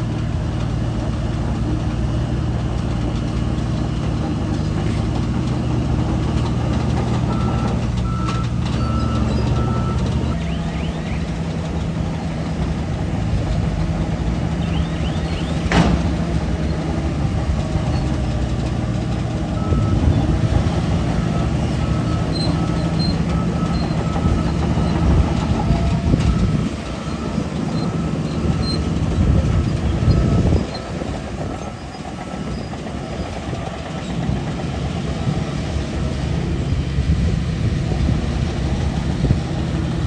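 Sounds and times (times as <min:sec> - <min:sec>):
diesel engine running under load: 0:00.0 - 0:40.0
backup alarm beeping: 0:07.3 - 0:11.5.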